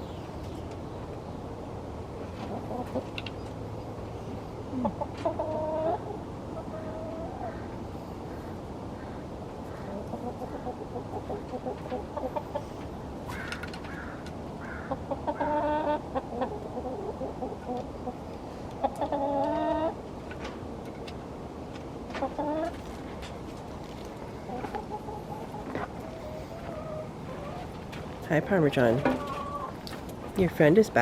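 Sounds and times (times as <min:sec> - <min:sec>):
chickens clucking: 0:02.2 - 0:30.5
hen drawn-out calls: 0:24.4 - 0:27.7, 0:28.7 - 0:29.8.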